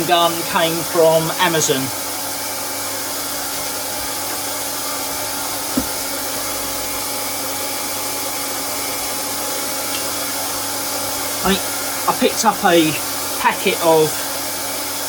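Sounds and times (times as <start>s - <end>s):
hot-air welding gun hissing: 0.0s - 15.0s.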